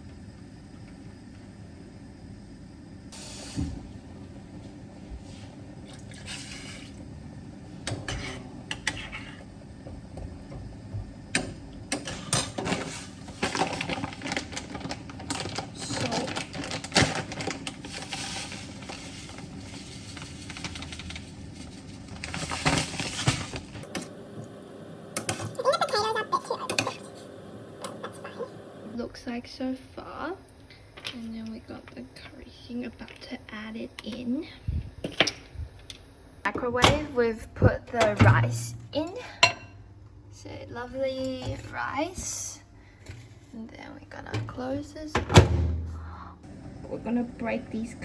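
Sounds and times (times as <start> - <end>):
water pouring into a pot: 5.8 - 7.2.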